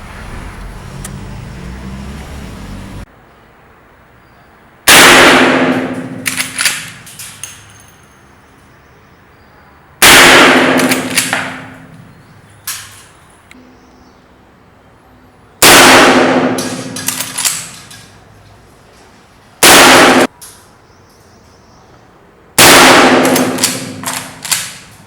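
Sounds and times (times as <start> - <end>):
rifle shots with ringing tail: 4.9 - 7.7, 10.0 - 12.0, 15.6 - 17.8, 19.6 - 20.3, 22.6 - 24.9
small clicks: 6.2 - 8.2, 17.0 - 18.6, 23.6 - 25.0.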